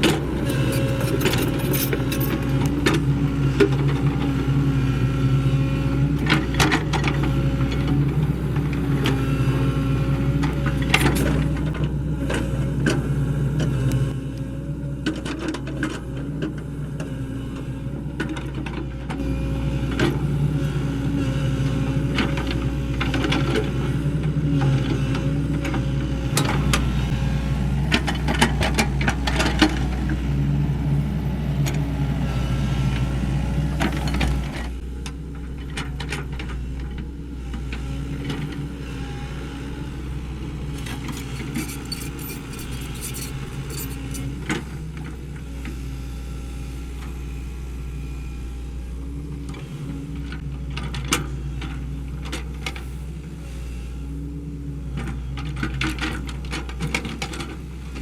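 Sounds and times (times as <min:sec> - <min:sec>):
excavator diesel engine running: 0:00.0 - 0:58.0
metallic clinks and rattles: 0:00.4 - 0:02.8, 0:40.8 - 0:44.4.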